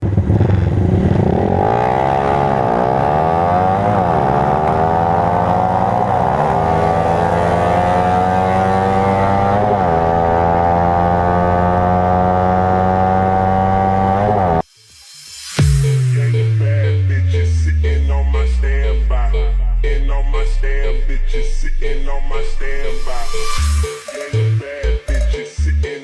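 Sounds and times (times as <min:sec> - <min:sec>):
motorcycle engine accelerating: 0:00.0 - 0:14.6.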